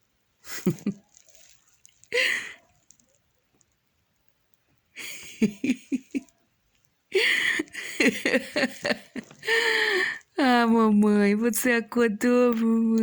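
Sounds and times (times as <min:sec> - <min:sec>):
woman giggling: 0:00.5 - 0:01.1, 0:02.1 - 0:02.6, 0:05.0 - 0:06.3, 0:07.1 - 0:10.2.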